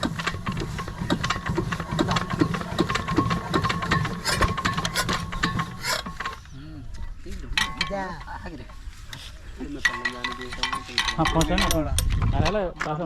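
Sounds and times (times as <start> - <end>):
diesel engine chugging: 0.0 - 6.4.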